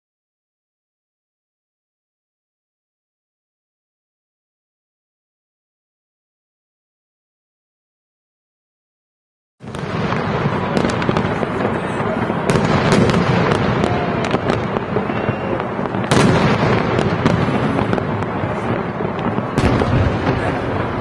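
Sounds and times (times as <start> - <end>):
fireworks crackling and banging: 9.6 - 21.0.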